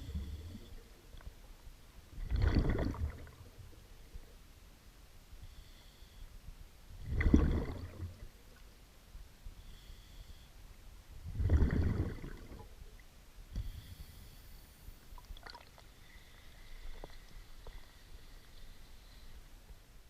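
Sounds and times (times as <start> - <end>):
bubbles rumbling underwater: 2.2 - 3.8, 7.0 - 8.4, 11.2 - 12.8.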